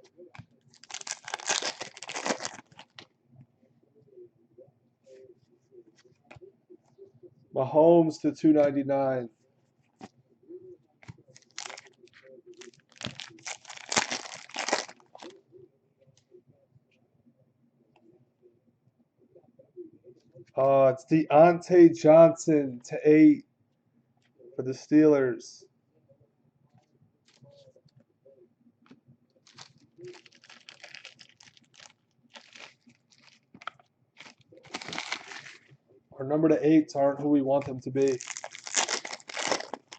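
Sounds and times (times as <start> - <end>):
foil wrapper tearing and crinkling: 0.7 - 3.0, 11.4 - 12.0, 12.6 - 15.3, 29.5 - 35.6, 38.0 - 39.9.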